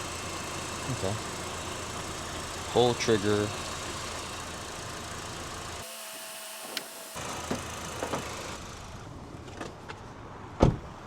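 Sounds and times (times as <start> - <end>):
car engine idling: 0.0 - 5.9, 7.2 - 9.2
loud thump: 10.6 - 10.8.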